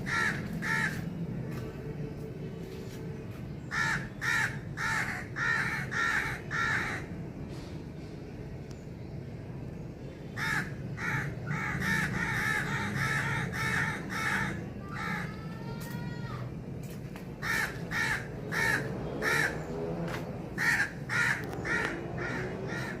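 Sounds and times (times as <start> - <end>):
crows cawing: 0.0 - 1.1, 3.7 - 7.1, 10.4 - 16.0, 17.4 - 19.7, 20.6 - 23.0
steady low background noise: 0.0 - 23.0.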